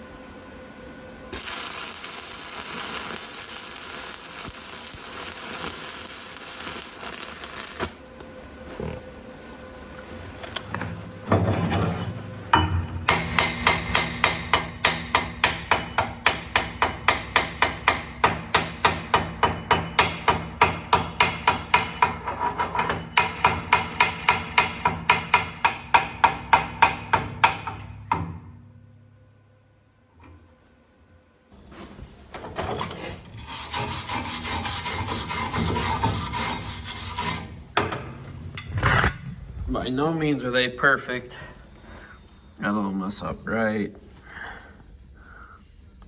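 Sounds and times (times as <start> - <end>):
steady low hum: 0.0 - 32.4, 33.1 - 46.0
hammer striking metal: 12.0 - 28.4.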